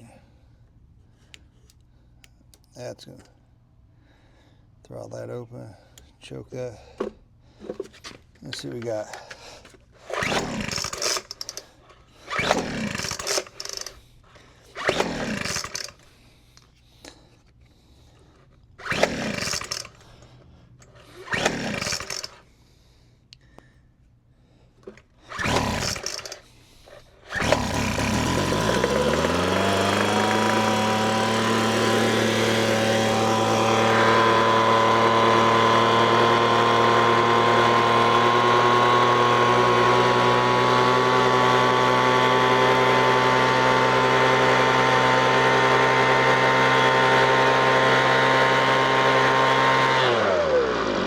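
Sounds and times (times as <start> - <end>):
starter cord pull: 7.0 - 11.7, 12.3 - 14.0, 14.7 - 16.1, 18.8 - 20.0, 20.8 - 22.4, 24.8 - 40.3
leaf blower engine running: 10.1 - 11.6, 12.3 - 13.9, 14.7 - 16.0, 18.8 - 20.0, 21.2 - 22.4, 25.3 - 26.4, 27.2 - 51.0.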